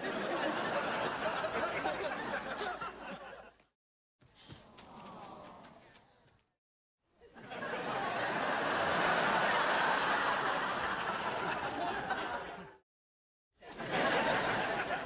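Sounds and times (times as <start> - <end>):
studio audience laughing: 0.0 - 3.6, 7.3 - 12.8, 13.7 - 15.0.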